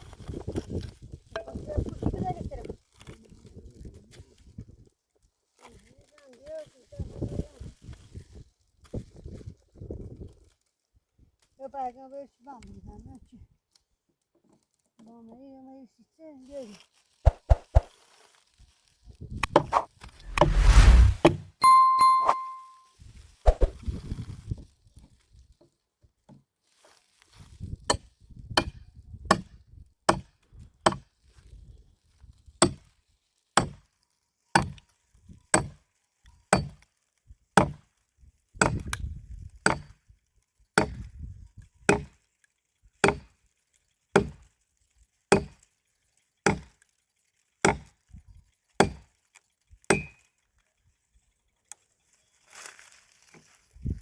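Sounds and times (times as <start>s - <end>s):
firewood being chopped: 17.3s - 17.9s, 33.6s - 33.8s, 34.6s - 34.8s, 35.6s - 35.8s, 36.6s - 36.8s, 37.6s - 37.8s, 38.6s - 38.9s, 39.7s - 39.9s, 41.9s - 42.2s, 44.2s - 44.4s, 45.4s - 45.6s, 46.5s - 46.8s, 47.6s - 47.9s, 48.8s - 49.1s, 49.9s - 50.2s.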